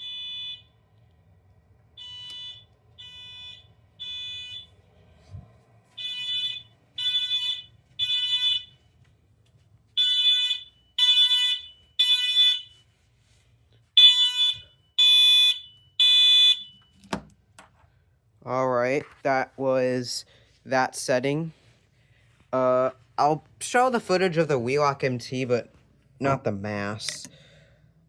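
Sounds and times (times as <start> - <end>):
fire alarm horn beeps: 0.0 - 1.0, 1.9 - 4.9, 5.9 - 9.0, 10.0 - 13.0, 13.8 - 17.0.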